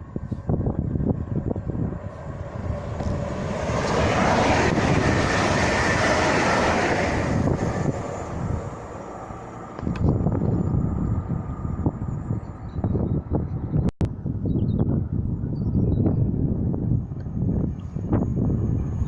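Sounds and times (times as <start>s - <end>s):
train passing: 0.0s - 13.4s
wind gusting on microphone: 0.0s - 19.0s.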